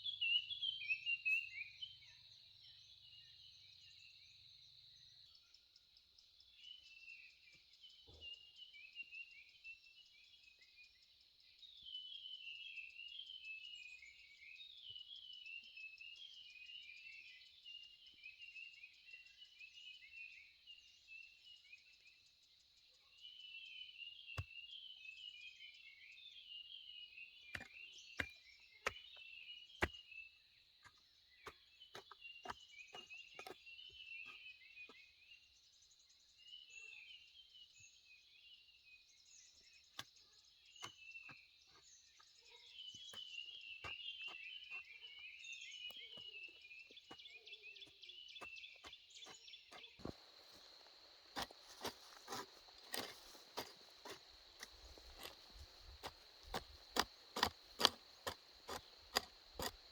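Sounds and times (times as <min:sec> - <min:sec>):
bird chirps: 0:00.0 - 0:05.6, 0:23.0 - 0:35.6, 0:39.2 - 0:59.9
insect drone: 0:50.0 - 0:59.9.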